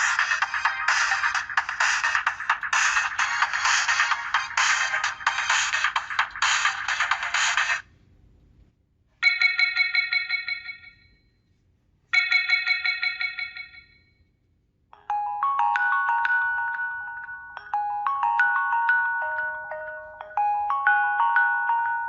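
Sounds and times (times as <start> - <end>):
bell-like trill ringtone: 0.0 - 7.8, 9.2 - 11.2, 12.2 - 14.3, 15.0 - 22.0
marimba-like ringtone melody: 0.0 - 7.8, 15.0 - 22.0.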